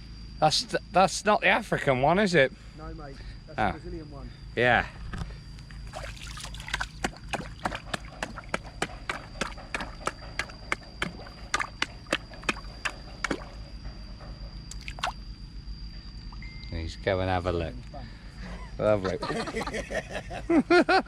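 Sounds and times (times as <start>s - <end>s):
fish plopping and splashing: 5.9s - 13.5s
thin high-pitched tone: 16.4s - 17.0s.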